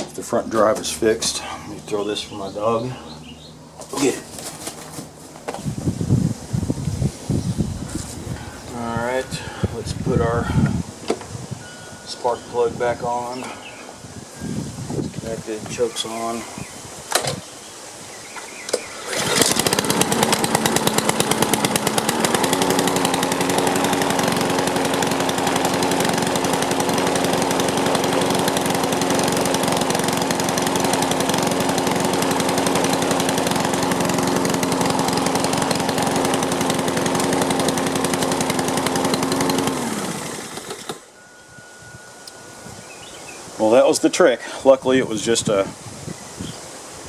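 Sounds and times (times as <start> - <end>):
lawn mower engine running: 0.0 - 6.8, 7.7 - 13.7, 18.4 - 41.2.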